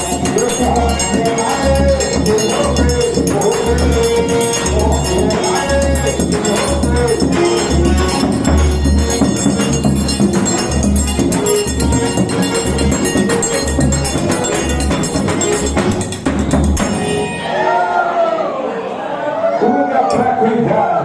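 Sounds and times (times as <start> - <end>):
crowd shouting: 17.0 - 21.0.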